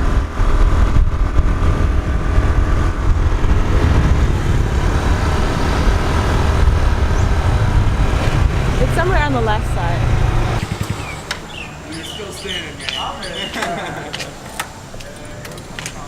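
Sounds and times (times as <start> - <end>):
wind rumble on microphone: 0.0 - 11.7
scooter engine running: 0.0 - 12.5.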